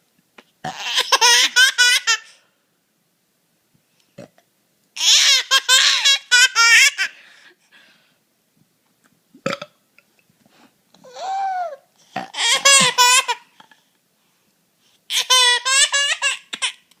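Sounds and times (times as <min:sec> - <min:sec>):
baby giggling: 0:00.7 - 0:02.4, 0:11.0 - 0:13.6, 0:15.1 - 0:17.0
baby burp: 0:09.4 - 0:09.8, 0:12.1 - 0:13.0.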